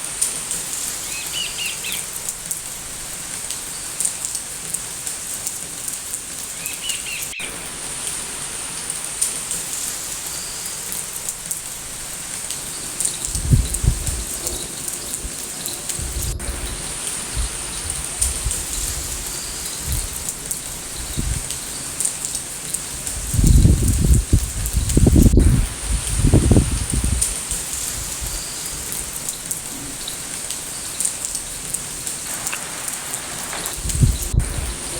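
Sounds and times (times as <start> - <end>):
rain hiss: 0.0 - 34.9
bird chirp: 6.6 - 7.6.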